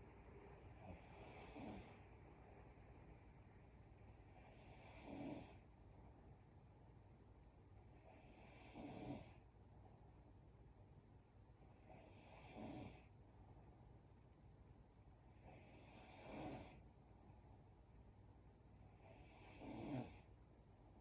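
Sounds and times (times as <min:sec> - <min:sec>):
woman snoring faintly: 0:00.6 - 0:02.1, 0:04.3 - 0:05.6, 0:08.1 - 0:09.4, 0:15.4 - 0:16.8, 0:19.0 - 0:20.3.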